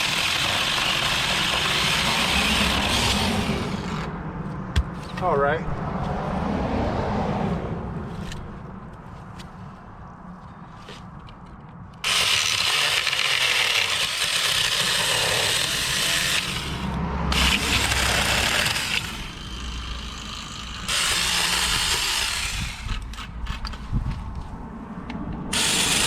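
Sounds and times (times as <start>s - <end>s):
chainsaw cutting wood: 0.0s - 4.1s, 12.0s - 23.7s, 25.5s - 26.0s.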